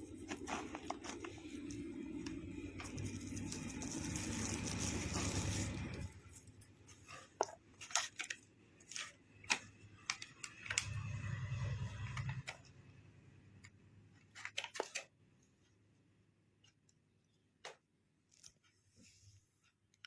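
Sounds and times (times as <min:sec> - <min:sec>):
plastic packaging clicks and taps: 0:07.4 - 0:11.0.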